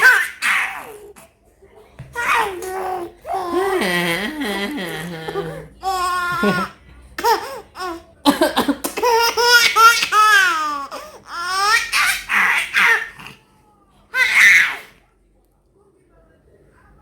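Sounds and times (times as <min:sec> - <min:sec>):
baby laughing: 0:00.0 - 0:01.2, 0:02.2 - 0:08.1, 0:08.8 - 0:13.4.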